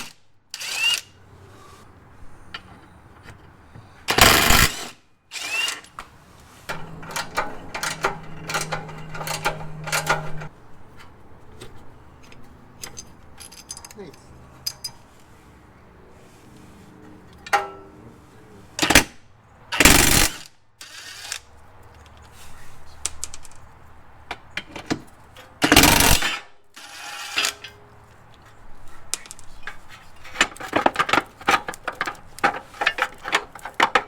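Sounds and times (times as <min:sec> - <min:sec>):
ratchet clicking: 0:04.1 - 0:04.8, 0:25.7 - 0:26.2
metal clicks: 0:06.7 - 0:10.5
socket tools rattling: 0:06.7 - 0:10.5, 0:12.3 - 0:15.0.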